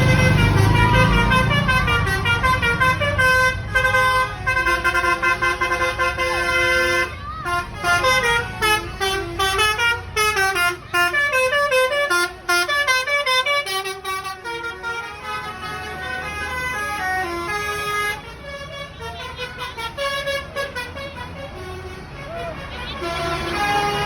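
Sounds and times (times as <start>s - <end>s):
low engine rumble: 0.0s - 24.0s
musical bus horns: 0.0s - 24.0s.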